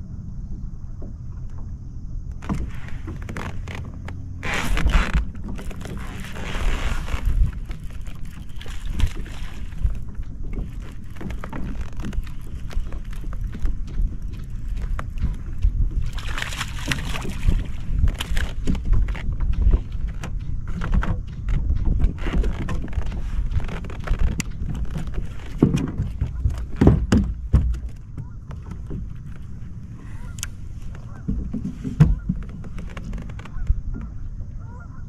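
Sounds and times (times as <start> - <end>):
wind buffeting microphone: 0.0 - 35.0
water hissing around hull: 1.8 - 18.2.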